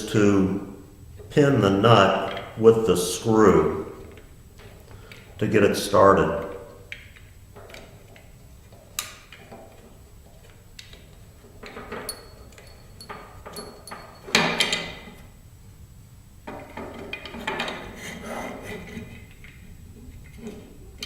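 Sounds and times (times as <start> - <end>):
metal hardware clatter: 11.6 - 15.1
metallic clinks: 11.9 - 14.9.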